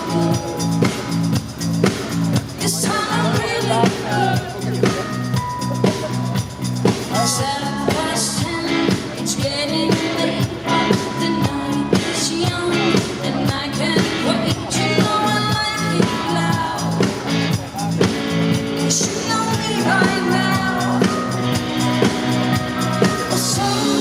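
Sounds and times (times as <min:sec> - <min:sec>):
woman singing: 0:00.0 - 0:00.9, 0:02.6 - 0:04.7, 0:07.1 - 0:17.3, 0:18.9 - 0:22.1, 0:23.0 - 0:24.0
live rock band playing: 0:00.0 - 0:24.0.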